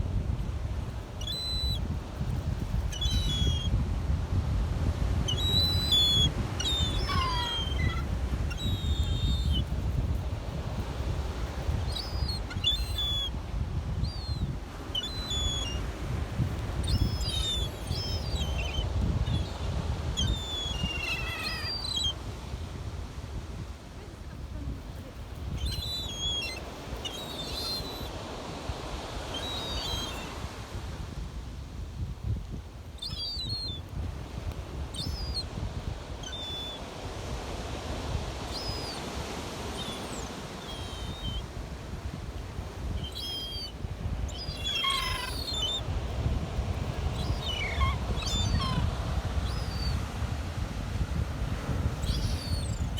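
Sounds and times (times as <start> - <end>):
surf rumbling: 0.0 - 52.9
wind: 0.0 - 52.9
gulls calling: 2.8 - 3.7, 5.3 - 13.4, 14.0 - 19.6, 20.2 - 22.2, 24.2 - 28.3, 29.2 - 30.5, 34.9 - 35.5, 36.2 - 36.9, 38.5 - 41.5, 42.9 - 50.1, 52.0 - 52.9.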